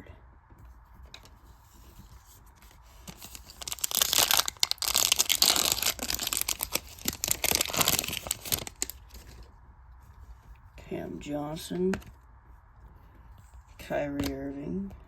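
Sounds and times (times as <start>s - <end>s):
wrapper tearing and crinkling: 2.6s - 9.5s.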